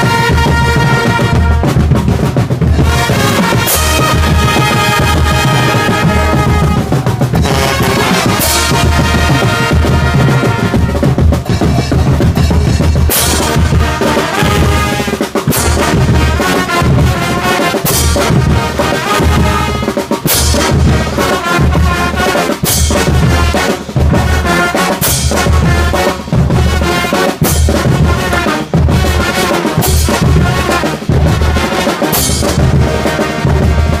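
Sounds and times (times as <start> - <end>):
brass band playing: 0.0 - 34.0
drum line with bass drum: 0.0 - 34.0.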